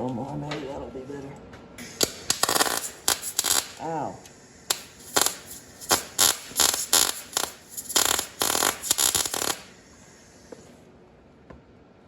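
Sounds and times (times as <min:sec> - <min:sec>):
welder arc crackling: 0:01.8 - 0:10.6.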